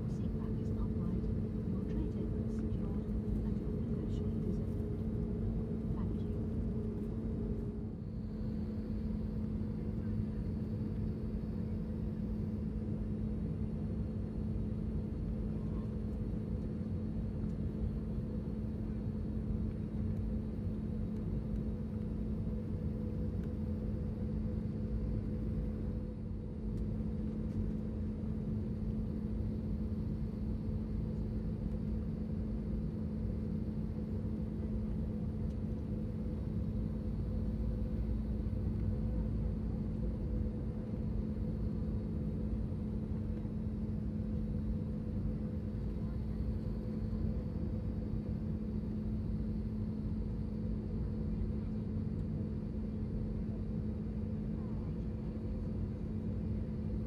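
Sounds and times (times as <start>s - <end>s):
airplane cabin engine rumble: 0.0s - 57.0s.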